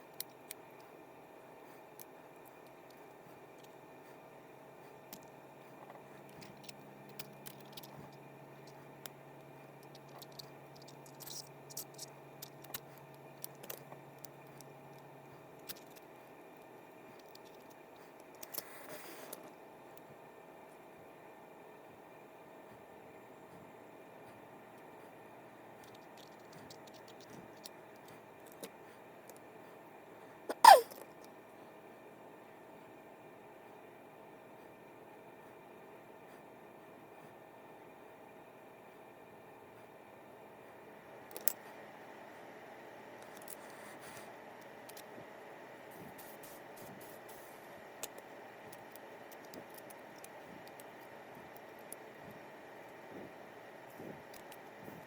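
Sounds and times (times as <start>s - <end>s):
small parts clicking and tapping: 0.0s - 1.0s, 1.7s - 3.8s, 4.8s - 20.1s, 25.8s - 29.5s, 41.2s - 41.7s, 43.2s - 43.8s, 44.6s - 45.4s, 46.0s - 55.0s
faint hum: 0.0s - 55.0s.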